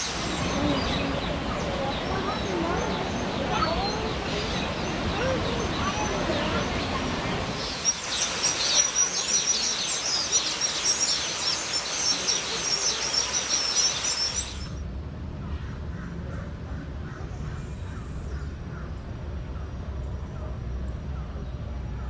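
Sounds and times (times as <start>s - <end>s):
flock of birds chirping: 0.0s - 14.8s.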